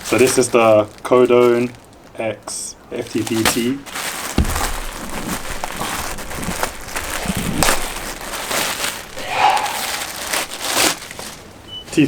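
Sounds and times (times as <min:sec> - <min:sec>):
plastic packaging crinkling: 0:00.0 - 0:02.2, 0:03.0 - 0:09.2, 0:09.8 - 0:11.6
small crackles and clicks: 0:00.0 - 0:02.3.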